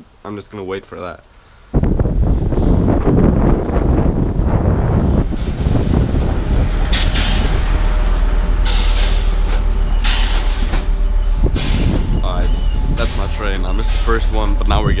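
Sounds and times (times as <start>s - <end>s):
train low rumble: 0.0s - 15.0s
air brakes hissing: 5.2s - 14.6s.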